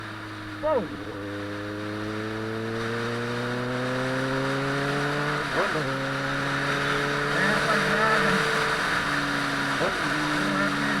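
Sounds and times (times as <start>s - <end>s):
motorcycle engine revving: 0.0s - 11.0s
wind and road noise: 0.0s - 11.0s.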